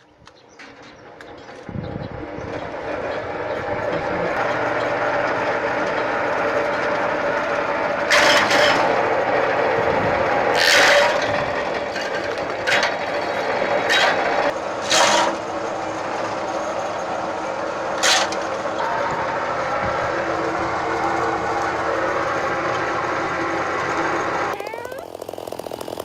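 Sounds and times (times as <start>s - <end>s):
shredding machine grinding: 1.4s - 26.0s
sharp cracks of material breaking: 24.9s - 26.0s.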